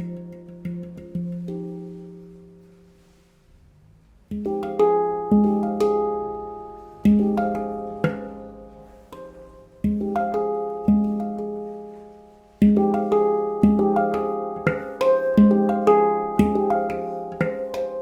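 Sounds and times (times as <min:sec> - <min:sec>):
handpan notes ringing: 0:00.0 - 0:03.2, 0:04.3 - 0:18.0.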